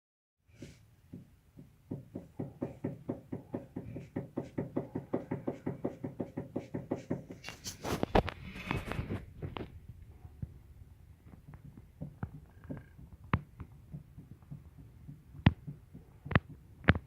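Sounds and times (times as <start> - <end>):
steering tie rods knocking: 1.1 - 7.4, 11.4 - 17.0.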